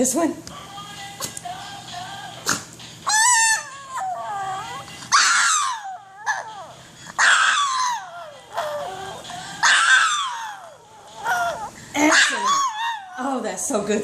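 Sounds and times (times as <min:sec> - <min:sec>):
dog howling: 0:03.0 - 0:13.4.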